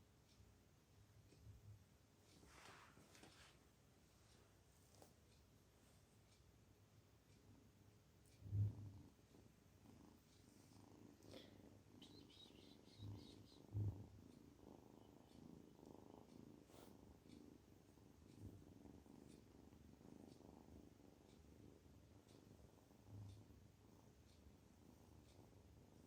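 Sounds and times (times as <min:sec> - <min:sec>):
kitten purring: 0:07.2 - 0:26.0.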